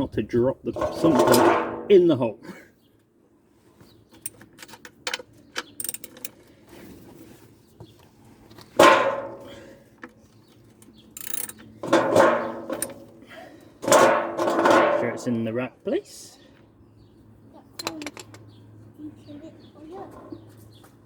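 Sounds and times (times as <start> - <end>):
hand tools clicking and clinking: 4.2 - 6.5, 10.0 - 13.1, 17.8 - 18.5.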